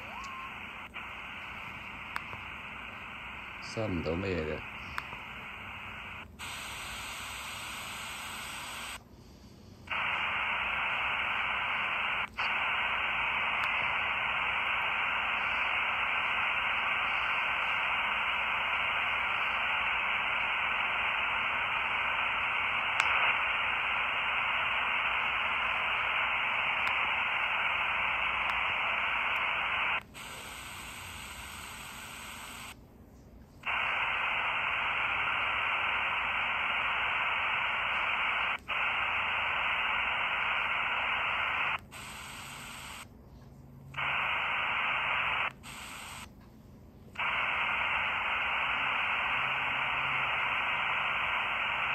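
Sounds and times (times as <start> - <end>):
radio static hiss: 0.0 - 32.8, 33.5 - 51.9.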